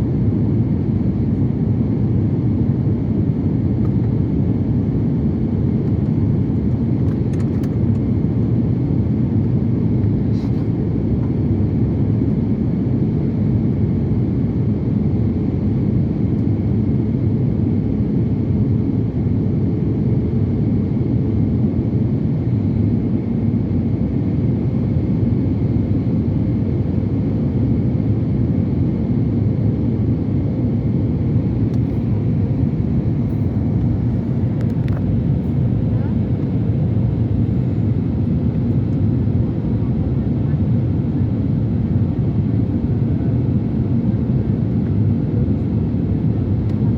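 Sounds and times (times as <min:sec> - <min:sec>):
airliner cabin engine rumble: 0:00.0 - 0:46.9.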